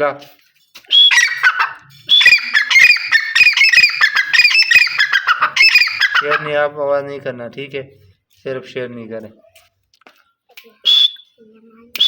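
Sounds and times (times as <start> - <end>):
francolin calling: 1.0 - 6.6.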